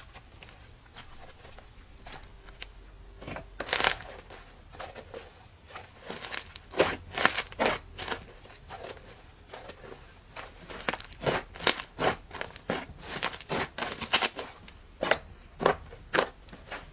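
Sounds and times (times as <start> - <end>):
slime clicking and crackling: 3.3 - 4.3, 6.0 - 9.8, 10.5 - 16.9.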